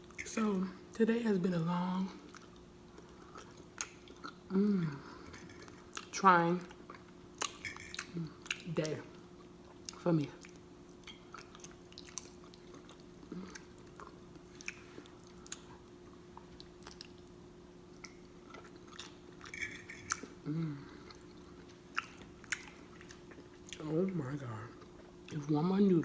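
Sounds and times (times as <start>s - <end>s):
faint steady hum: 0.0s - 26.0s
chewing and wet lip smacking: 2.2s - 4.4s, 6.7s - 8.7s, 9.4s - 17.4s, 18.0s - 20.4s, 21.0s - 23.8s.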